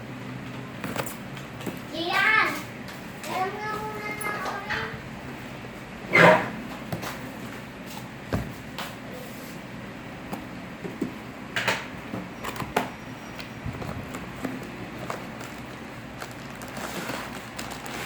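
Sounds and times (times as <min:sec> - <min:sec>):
knocks and clicks of objects handled: 0:00.5 - 0:01.9, 0:08.3 - 0:09.0, 0:10.3 - 0:17.8.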